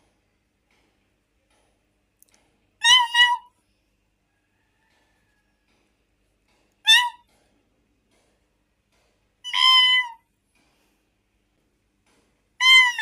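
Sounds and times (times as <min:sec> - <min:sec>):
kitten meowing: 0:02.8 - 0:03.5, 0:06.9 - 0:07.2, 0:09.5 - 0:10.2, 0:12.6 - 0:13.0.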